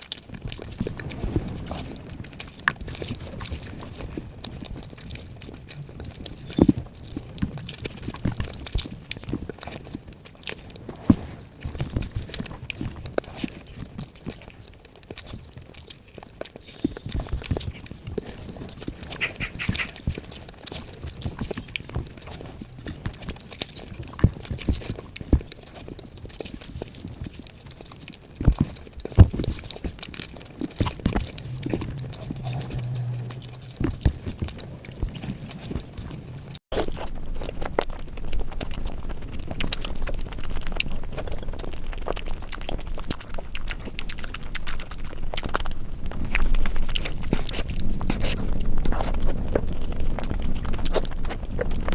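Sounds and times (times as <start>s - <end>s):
wet chewing and lip smacks: 0.0s - 51.9s
low rumble: 0.4s - 8.0s, 29.5s - 51.9s.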